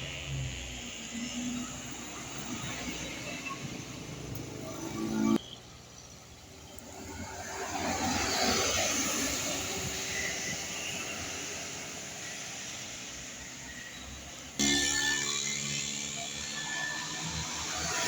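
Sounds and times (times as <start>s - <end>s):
bus passing close by: 6.3s - 14.6s.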